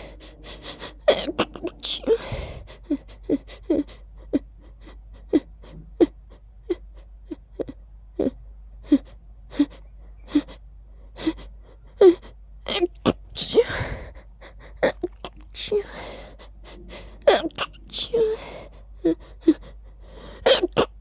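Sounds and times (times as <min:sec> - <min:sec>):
person gasping breaths: 0:00.0 - 0:07.2, 0:13.4 - 0:20.7.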